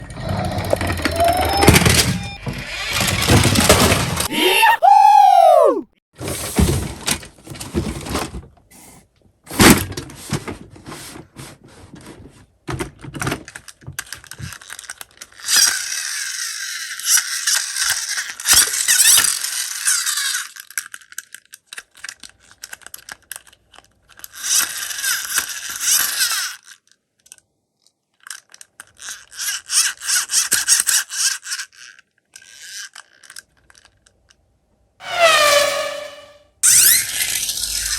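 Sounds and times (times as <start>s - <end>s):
toy cars clattering: 12.7s - 34.4s, 36.7s - 37.9s.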